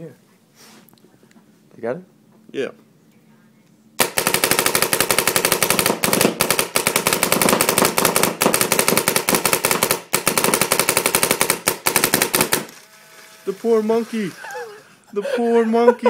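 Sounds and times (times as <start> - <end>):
paintball marker rapid firing: 4.0 - 12.8.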